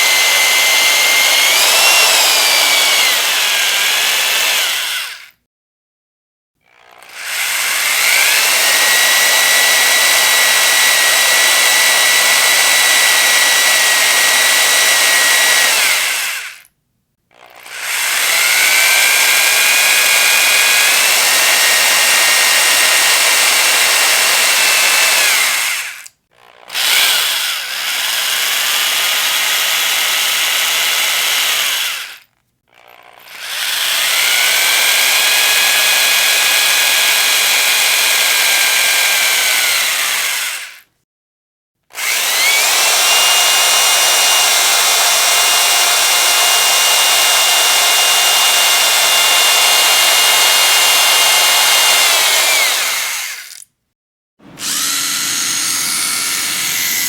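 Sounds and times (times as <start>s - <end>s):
electric drill whining: 0.0s - 5.4s, 6.6s - 16.7s, 17.3s - 40.9s, 41.9s - 53.7s, 54.4s - 57.0s.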